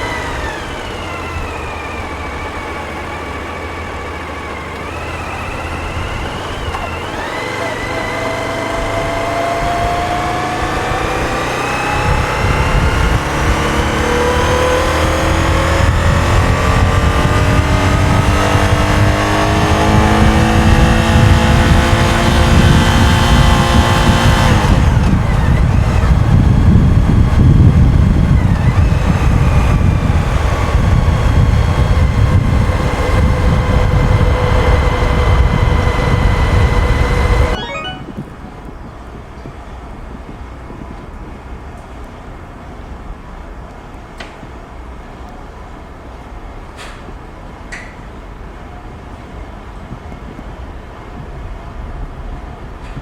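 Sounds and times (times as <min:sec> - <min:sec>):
motorcycle engine accelerating: 0:00.0 - 0:38.3
wind rumble on microphone: 0:05.8 - 0:41.8, 0:49.1 - 0:53.0.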